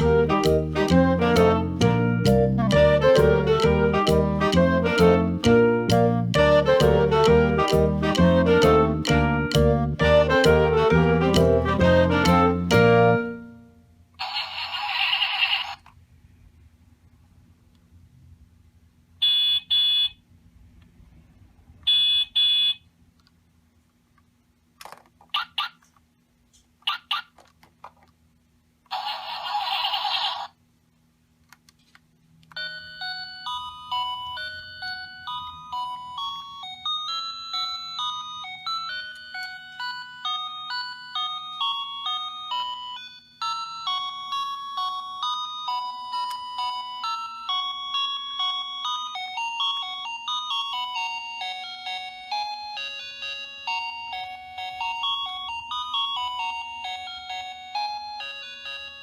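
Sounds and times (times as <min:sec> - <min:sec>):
tinny electronic beeping melody: 0:00.0 - 0:13.8.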